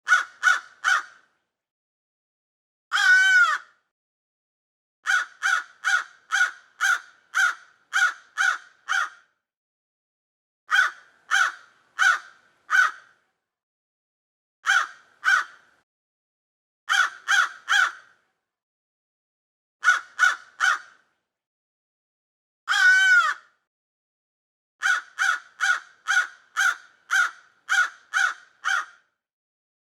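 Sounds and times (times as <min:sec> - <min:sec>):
crow cawing: 0:00.0 - 0:01.2, 0:02.9 - 0:03.8, 0:05.0 - 0:09.3, 0:10.7 - 0:13.2, 0:14.6 - 0:15.7, 0:16.9 - 0:18.1, 0:19.8 - 0:21.0, 0:22.7 - 0:23.5, 0:24.8 - 0:29.1.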